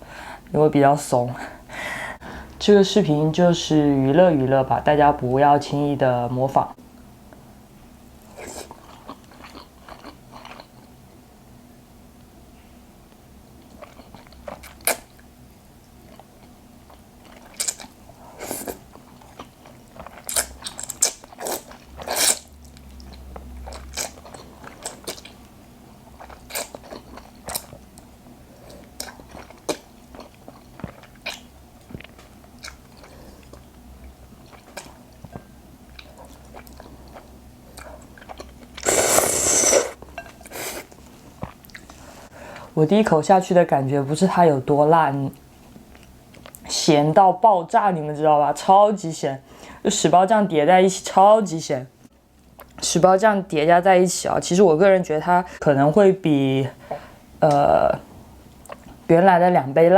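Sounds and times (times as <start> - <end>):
person chewing noodles: 8.2 - 11.0, 13.6 - 15.3, 15.9 - 42.0, 58.5 - 59.0
loud noisy mouth sound: 38.8 - 40.0.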